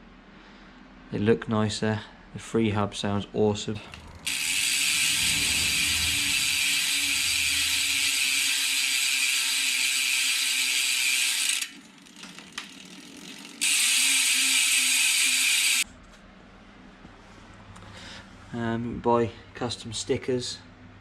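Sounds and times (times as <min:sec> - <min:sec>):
bicycle freehub ratcheting buzz: 0:03.9 - 0:15.9.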